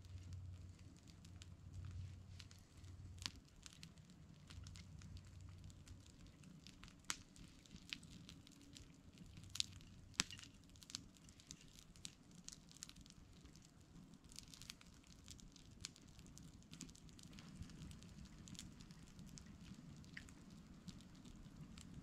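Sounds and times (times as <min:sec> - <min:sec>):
campfire crackling: 0:00.0 - 0:22.0
faint low hiss: 0:00.0 - 0:22.0.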